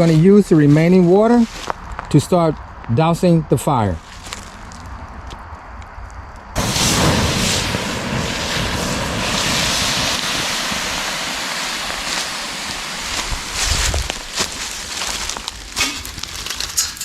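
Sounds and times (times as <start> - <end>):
water hissing on hot coals: 6.6 - 17.0.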